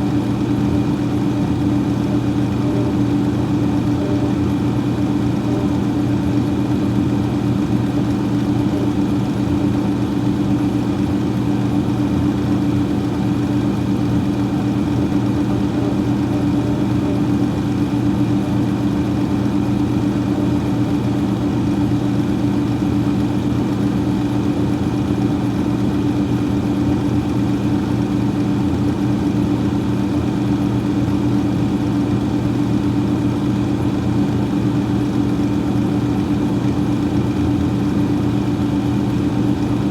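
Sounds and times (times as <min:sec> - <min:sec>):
freezer fan humming: 0:00.0 - 0:39.9.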